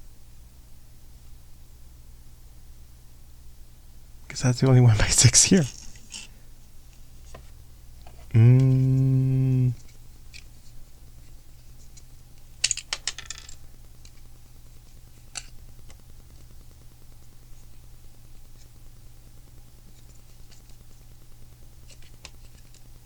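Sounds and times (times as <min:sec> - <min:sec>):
person humming hmm: 0:08.2 - 0:09.8
plastic lego pieces clicking: 0:12.6 - 0:14.2.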